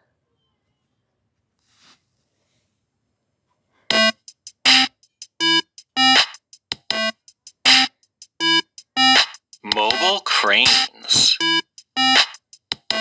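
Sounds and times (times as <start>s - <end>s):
bouncy synthesizer music: 3.9s - 13.0s.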